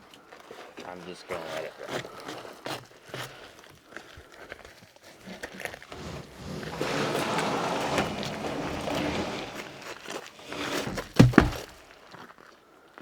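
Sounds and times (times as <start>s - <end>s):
plastic sheeting rustling and crinkling: 5.6s - 11.8s
handling knocks: 5.9s - 11.8s.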